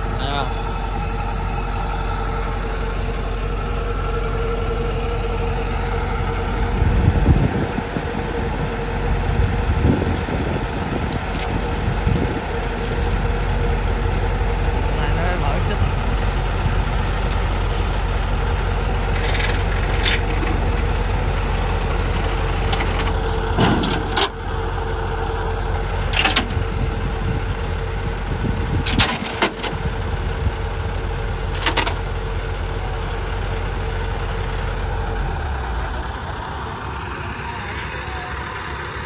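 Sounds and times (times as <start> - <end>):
steady whine: 0.0 - 29.8
diesel engine running: 0.0 - 39.0.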